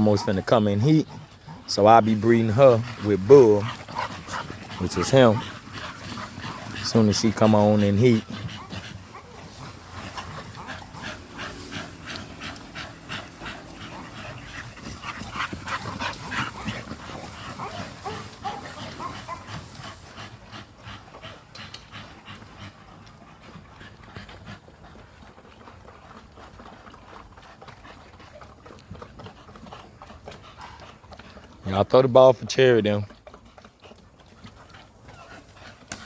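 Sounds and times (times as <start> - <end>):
dogs whimpering: 0.0 - 20.0
dogs panting: 0.0 - 36.0.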